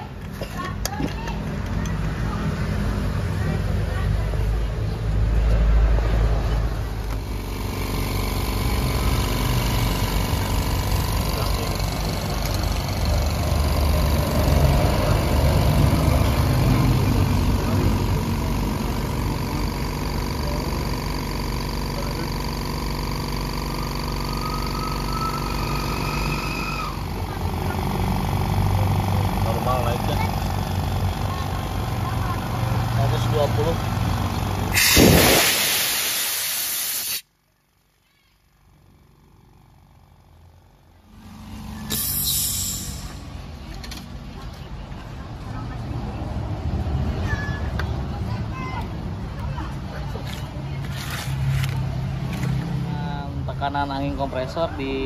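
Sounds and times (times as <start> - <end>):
motor humming with high whine: 6.7 - 36.2
compressed air hissing: 34.7 - 37.3, 41.9 - 43.3.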